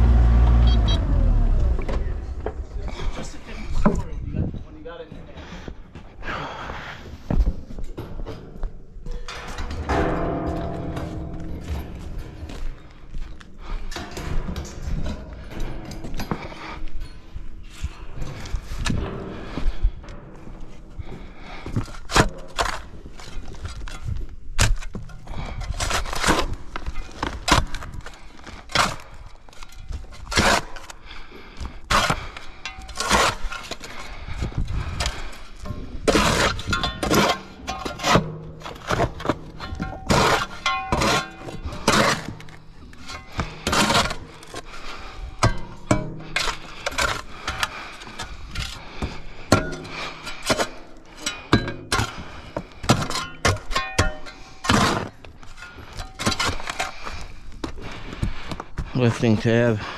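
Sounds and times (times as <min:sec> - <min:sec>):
excavator bucket crunching soil: 0:00.0 - 0:03.8, 0:31.9 - 0:49.2
excavator engine rumble: 0:00.0 - 0:04.9
sharp metallic knocks and clanks: 0:07.3 - 0:24.0, 0:31.7 - 0:57.0.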